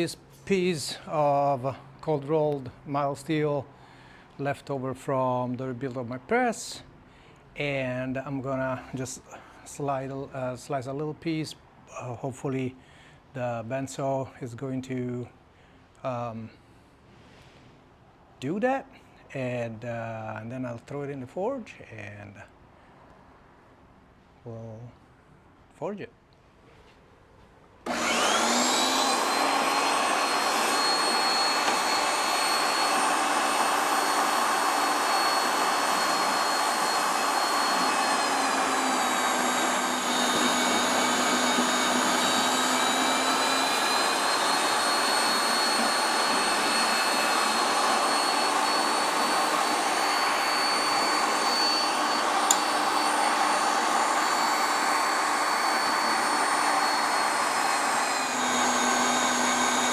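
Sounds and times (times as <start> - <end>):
bandsaw cutting steel: 27.9 - 59.9.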